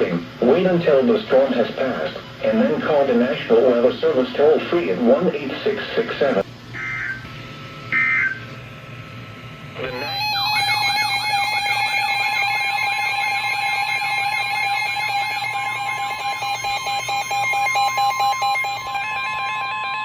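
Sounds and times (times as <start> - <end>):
buzzy data bursts: 0.3 - 20.0
two-tone attention signal: 6.8 - 7.3, 7.9 - 8.5, 9.8 - 20.0.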